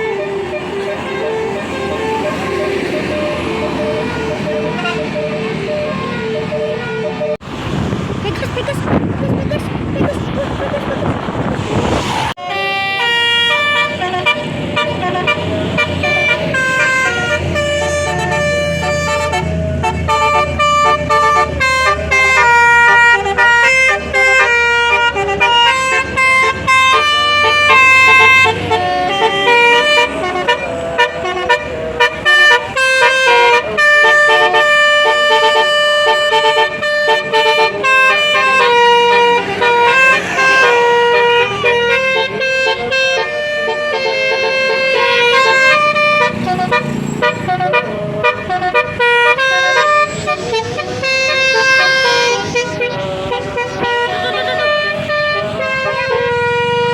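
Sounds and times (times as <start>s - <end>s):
bus musical air horn tune: 0.0s - 7.4s, 12.4s - 56.9s
bus engine rumble: 0.0s - 56.9s.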